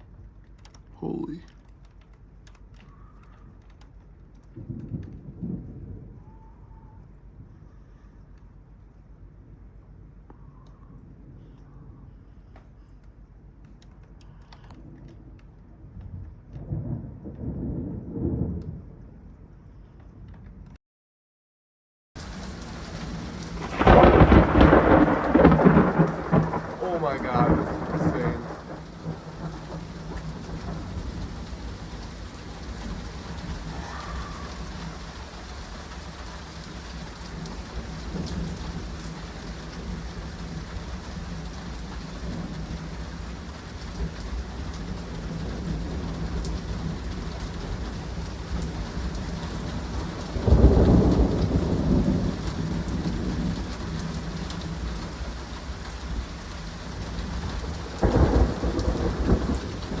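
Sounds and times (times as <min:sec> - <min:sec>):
steady rain: 0:00.0 - 0:10.2, 0:22.2 - 1:00.0
thunder clap rumbling: 0:04.5 - 0:07.4, 0:14.8 - 0:20.3, 0:22.2 - 1:00.0.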